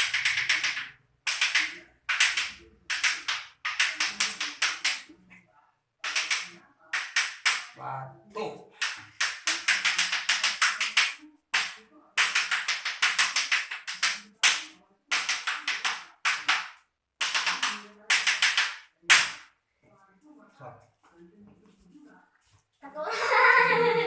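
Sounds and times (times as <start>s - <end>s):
hands slapping a body: 6.0s - 7.7s, 8.8s - 19.5s.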